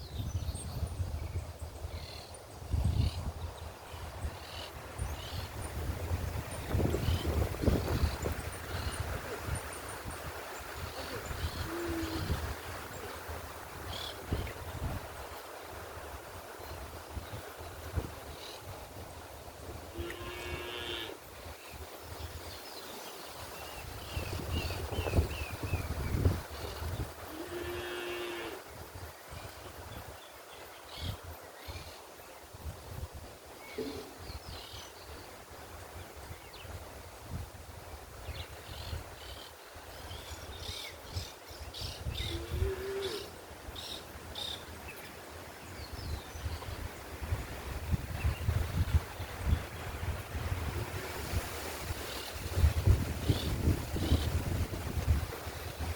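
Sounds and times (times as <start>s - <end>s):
wind rumble on microphone: 0.0s - 22.8s, 23.6s - 28.0s, 32.5s - 44.6s, 45.7s - 55.9s
songbirds chirping: 0.0s - 50.5s
cow mooing: 20.0s - 21.2s, 27.4s - 28.6s, 42.3s - 43.3s.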